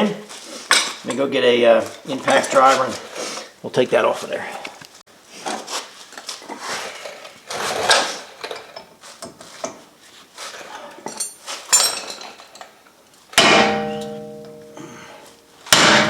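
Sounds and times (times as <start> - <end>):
metal tools clattering: 11.0 - 12.8, 13.4 - 15.0
hammer striking impact driver: 13.4 - 14.8, 15.7 - 16.0.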